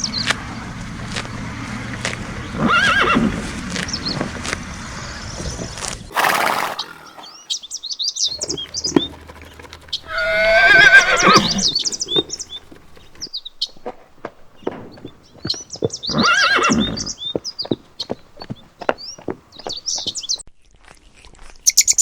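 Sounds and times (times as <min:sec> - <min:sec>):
small birds chirping: 0:00.0 - 0:20.4
horse whinnying: 0:02.6 - 0:03.4, 0:06.1 - 0:07.4, 0:08.3 - 0:13.2, 0:16.1 - 0:17.2.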